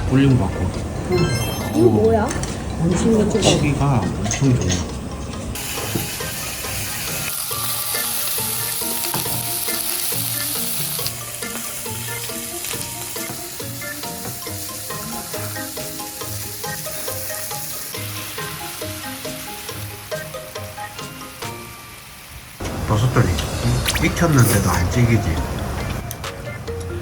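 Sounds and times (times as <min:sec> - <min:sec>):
meat sizzling: 0:05.6 - 0:24.7
background music with beat: 0:25.8 - 0:27.0.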